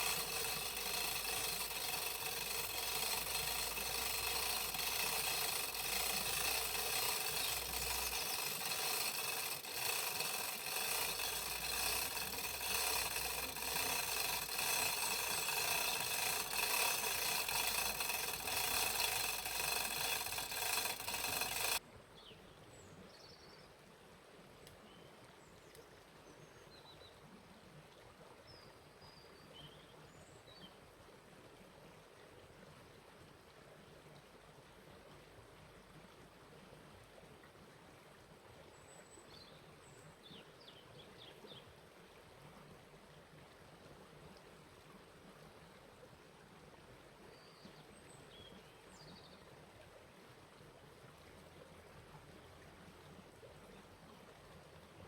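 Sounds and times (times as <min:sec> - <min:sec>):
loud machine noise: 0:00.0 - 0:21.8.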